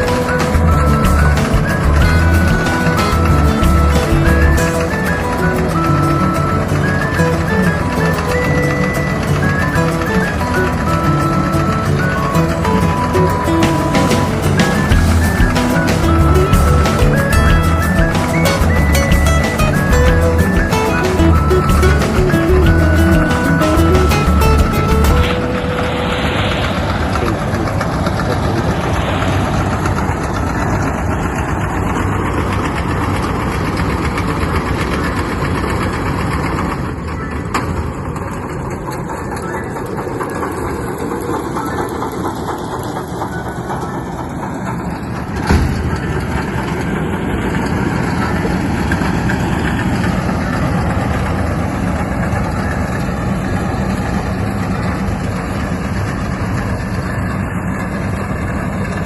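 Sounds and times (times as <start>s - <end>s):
tractor engine running under load: 0.0s - 59.0s.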